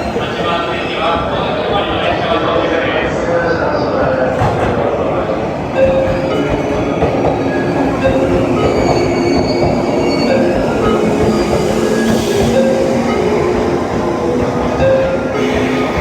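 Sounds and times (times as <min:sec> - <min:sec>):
train running on track: 0:00.0 - 0:16.0
train wheel squeals: 0:05.8 - 0:16.0.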